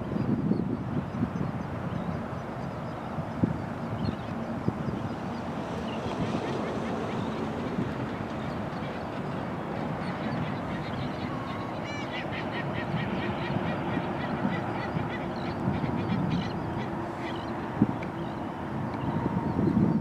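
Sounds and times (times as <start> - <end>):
wind on microphone: 0.0 - 20.0
waterbirds honking: 3.7 - 18.7.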